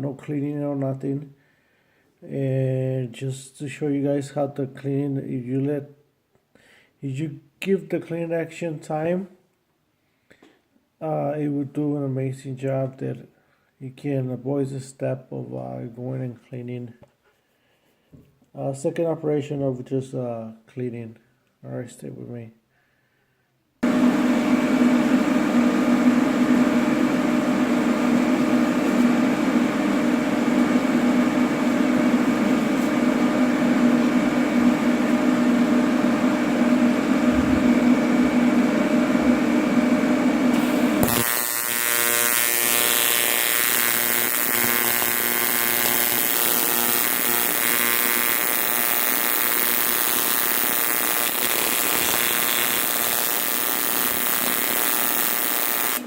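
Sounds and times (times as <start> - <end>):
welding arc buzzing: 40.5 - 56.0.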